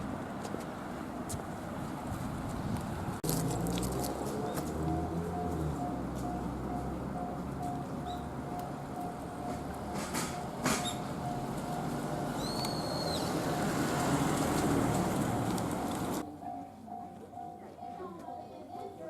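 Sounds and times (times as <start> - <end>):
train rumbling past: 0.0 - 18.8
level crossing warning bell: 4.3 - 15.0, 15.7 - 19.0.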